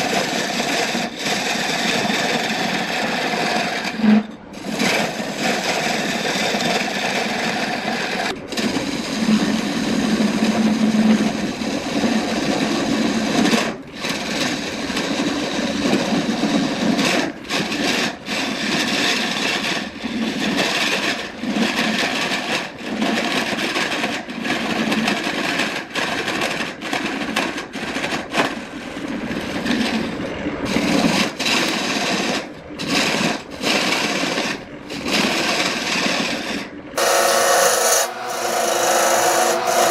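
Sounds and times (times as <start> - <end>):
lathe tool scraping wood: 0.0 - 39.9
lathe motor humming: 31.8 - 39.9.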